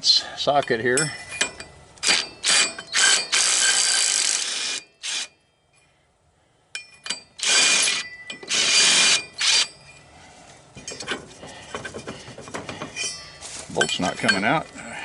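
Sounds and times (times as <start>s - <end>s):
power tool whirring: 2.0s - 5.3s, 7.4s - 9.7s.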